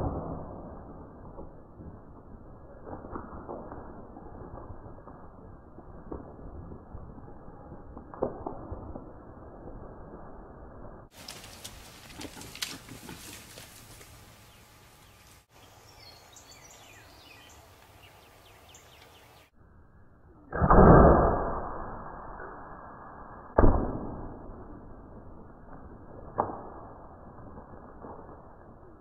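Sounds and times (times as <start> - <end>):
sharp crack: 0.0 - 9.7, 11.0 - 15.5, 20.5 - 22.6, 23.5 - 29.0
birds chirping faintly: 11.2 - 19.6.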